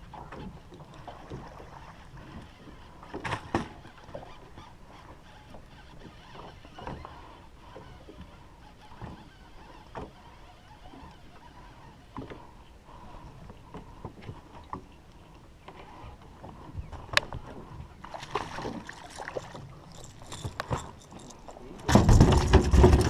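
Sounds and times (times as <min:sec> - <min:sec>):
fishing clicks and knocks: 0:00.2 - 0:12.4, 0:13.2 - 0:23.0
fish splashing: 0:18.1 - 0:21.3.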